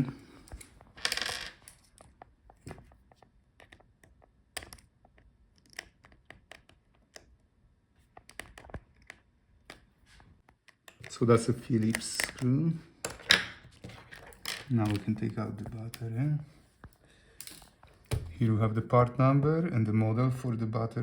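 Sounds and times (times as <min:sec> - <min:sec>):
screwdriver clicking and scraping: 0:10.5 - 0:12.5.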